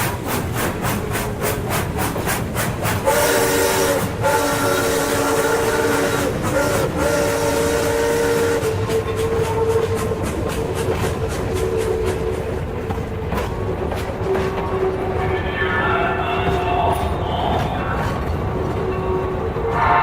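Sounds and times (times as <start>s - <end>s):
steam locomotive chime whistle: 3.1s - 10.0s, 18.7s - 20.0s.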